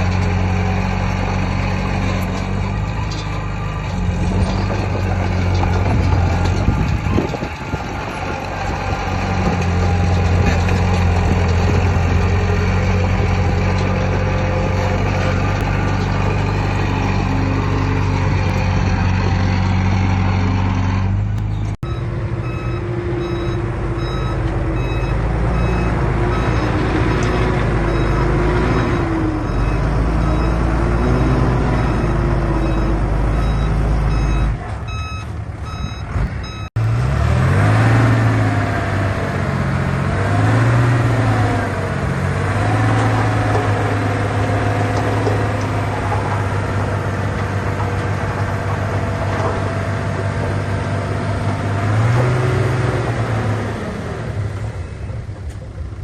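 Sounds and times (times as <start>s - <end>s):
heavy diesel engines running: 0.0s - 56.0s
reversing alarm beeping: 21.8s - 36.8s.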